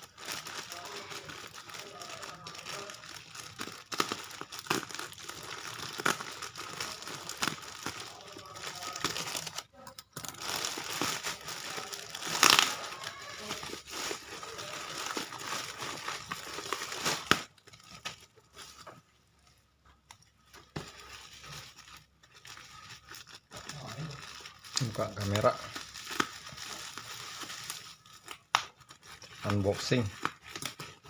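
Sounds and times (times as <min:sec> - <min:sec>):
packaging tearing: 0:00.0 - 0:18.8, 0:20.6 - 0:31.0
packaging crinkling and rustling: 0:00.0 - 0:31.0.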